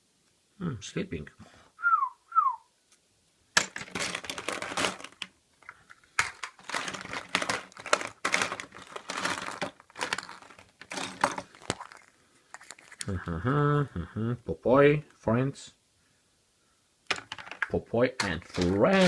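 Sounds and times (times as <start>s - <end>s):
foil wrapper crinkling: 3.6s - 13.2s, 18.2s - 19.0s
foil tearing: 3.8s - 5.3s, 6.2s - 13.1s, 18.3s - 19.0s.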